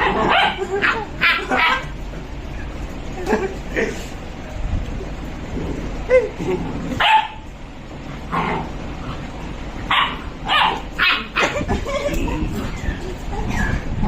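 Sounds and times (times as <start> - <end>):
dogs barking and yipping: 0.0 - 4.2, 6.8 - 7.5, 8.1 - 14.0.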